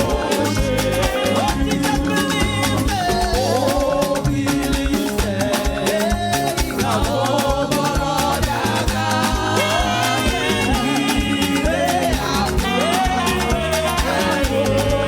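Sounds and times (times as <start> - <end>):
band playing upbeat gospel music: 0.0 - 15.0
voices singing: 0.0 - 15.0.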